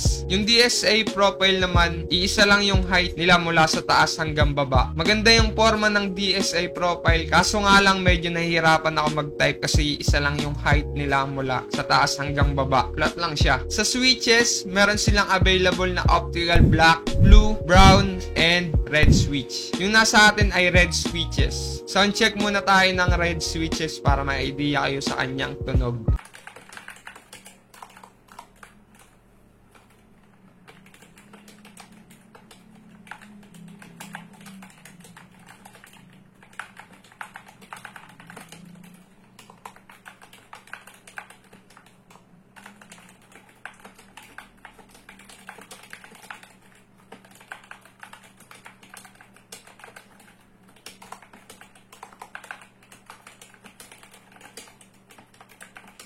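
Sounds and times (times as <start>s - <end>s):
keyboard keystroke clacks: 26.2s - 56.0s.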